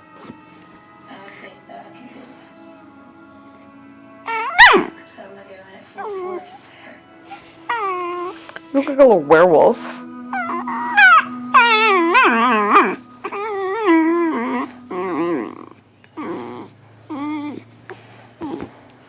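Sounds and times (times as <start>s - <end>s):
dog howling and whining: 4.2s - 5.0s, 6.0s - 6.6s, 7.3s - 8.5s, 10.1s - 17.8s.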